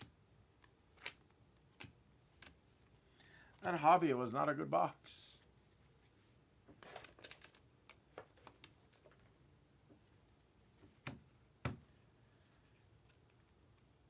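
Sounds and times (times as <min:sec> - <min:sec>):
cards clicking and rustling: 0:00.5 - 0:03.0, 0:06.8 - 0:09.2.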